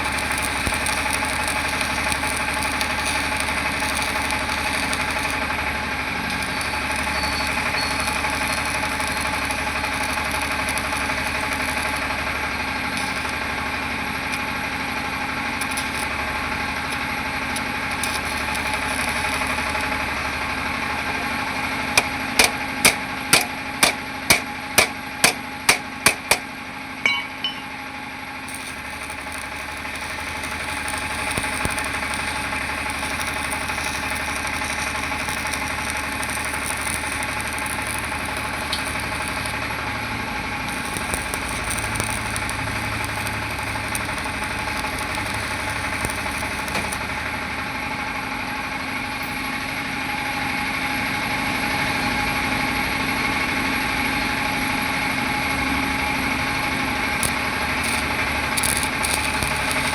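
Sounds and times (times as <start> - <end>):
engine-like mechanical running: 28.4 - 59.9.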